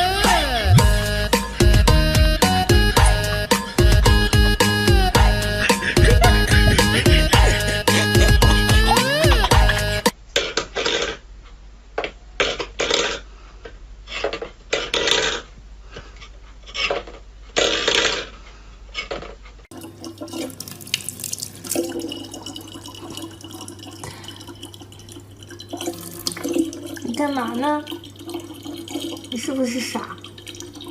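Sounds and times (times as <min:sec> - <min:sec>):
water splashing: 0:19.7 - 0:30.9.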